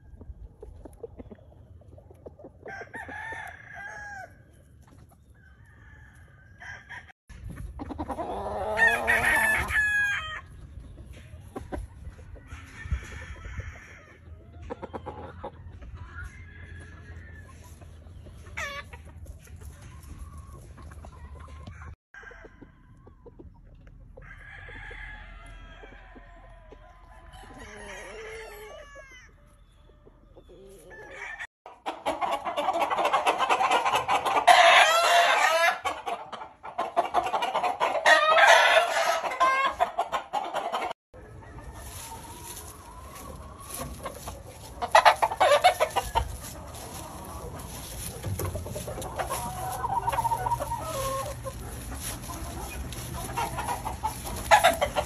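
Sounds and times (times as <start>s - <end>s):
hens clucking: 0.0s - 3.9s, 6.6s - 55.0s
roosters crowing: 2.6s - 4.5s, 5.3s - 7.2s, 8.0s - 10.5s, 12.4s - 14.3s, 16.0s - 17.8s, 24.2s - 29.6s, 30.5s - 36.2s, 37.0s - 55.0s.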